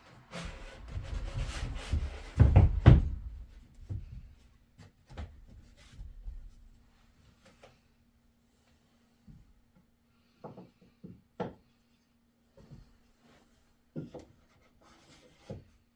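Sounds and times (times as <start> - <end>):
knocks and thuds: 0.9 - 4.3.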